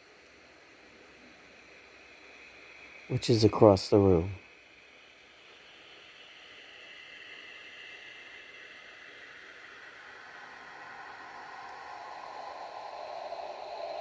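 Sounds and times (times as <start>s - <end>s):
radio static hiss: 3.1s - 4.4s.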